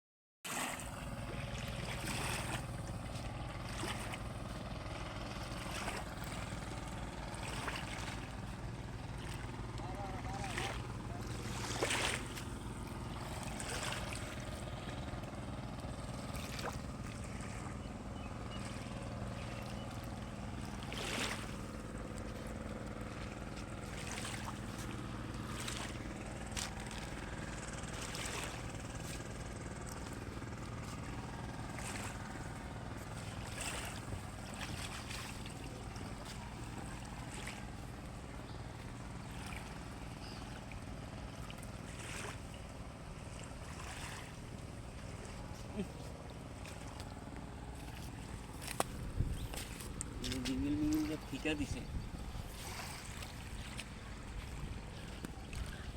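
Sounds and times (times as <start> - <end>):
short knocks or splashes: 0.5 - 4.3, 5.2 - 8.5, 10.5 - 15.4, 16.1 - 17.7, 18.6 - 37.8, 52.4 - 55.9
boat engine running: 0.5 - 55.9.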